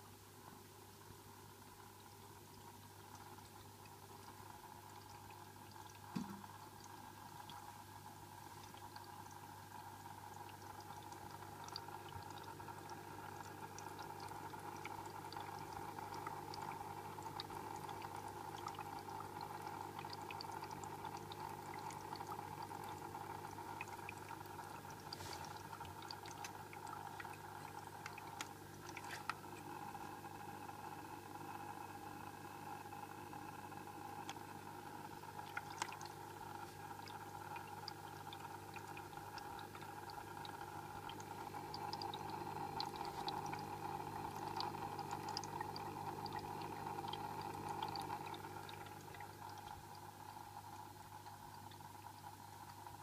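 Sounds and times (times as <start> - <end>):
filter motor hum: 0.0 - 53.0
water flowing: 20.0 - 31.1, 33.5 - 51.4.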